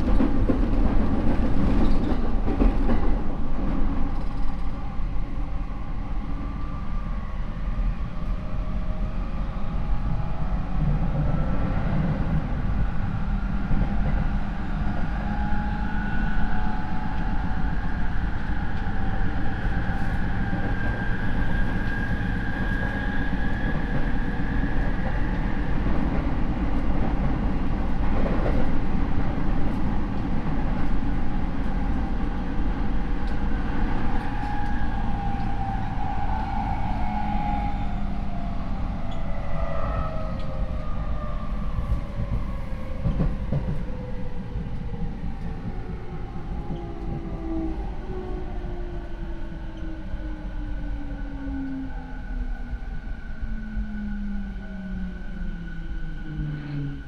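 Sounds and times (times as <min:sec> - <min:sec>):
train wheels rumbling on rail: 0:00.0 - 0:53.1.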